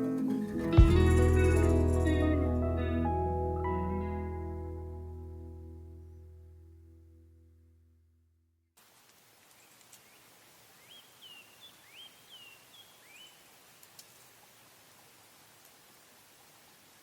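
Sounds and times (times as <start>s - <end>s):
music: 0.0s - 7.3s
faint outdoor ambience: 8.8s - 17.0s.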